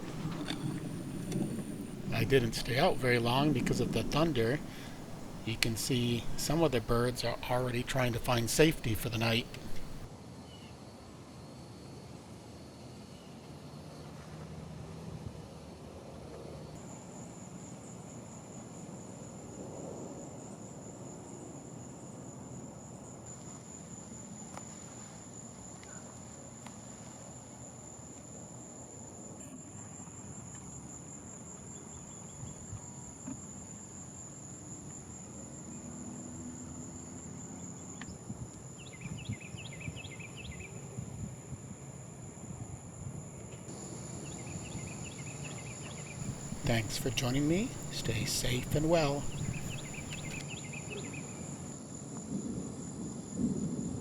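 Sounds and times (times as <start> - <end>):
bird chirping: 0.0 - 10.1, 46.2 - 50.4
insects trilling: 0.0 - 10.1, 43.7 - 51.5
fainter high insect trill: 43.8 - 51.8.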